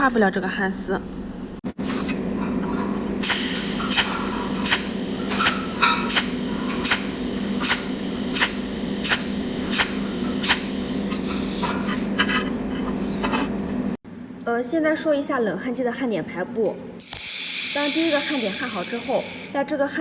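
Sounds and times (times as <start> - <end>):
welding machine crackle: 3.2 - 11.6, 17.0 - 19.6.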